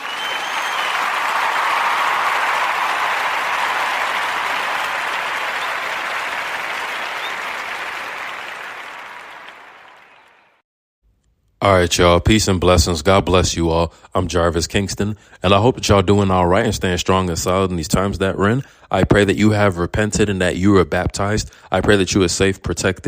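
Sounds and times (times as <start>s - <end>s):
crowd applauding: 0.0s - 10.6s.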